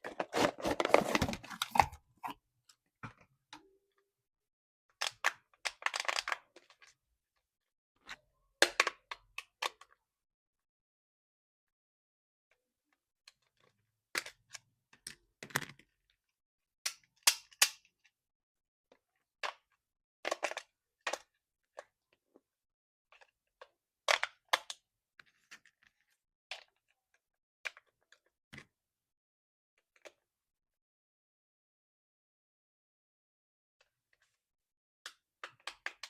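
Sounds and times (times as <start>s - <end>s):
packaging crinkling: 0.0s - 2.0s
toy unboxing clicks and taps: 0.0s - 2.0s.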